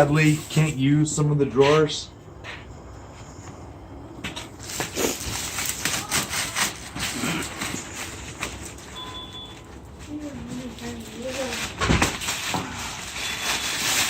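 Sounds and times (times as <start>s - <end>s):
short electronic beep: 9.0s - 9.6s.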